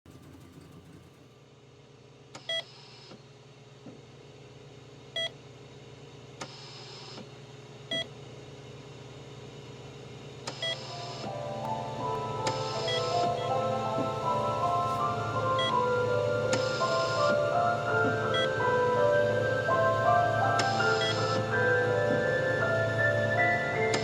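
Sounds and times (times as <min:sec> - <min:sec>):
short electronic beep: 0:12.6 - 0:13.6.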